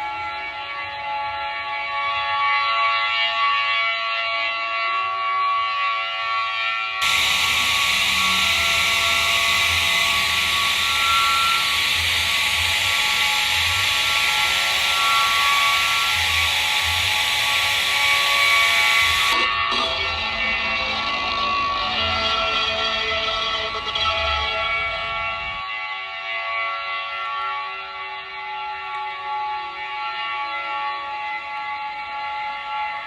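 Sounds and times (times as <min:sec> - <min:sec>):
loud hiss: 0:07.0 - 0:19.4
siren-like alarm tones: 0:07.0 - 0:28.5.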